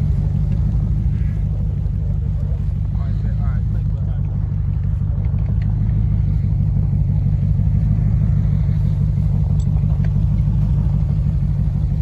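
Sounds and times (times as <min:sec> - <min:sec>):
engine rumbling: 0:00.0 - 0:12.0.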